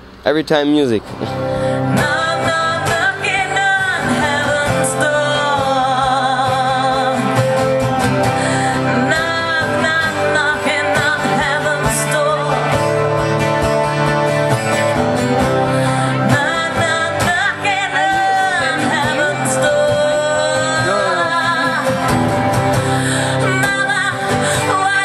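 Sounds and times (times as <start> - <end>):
instrumental backing music: 0.8 - 25.0
person singing wavering notes: 16.0 - 25.0.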